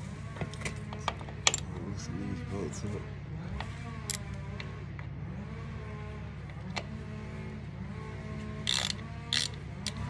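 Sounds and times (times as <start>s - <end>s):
low mechanical drone: 0.0s - 10.0s
screwdriver clicks: 8.7s - 10.0s.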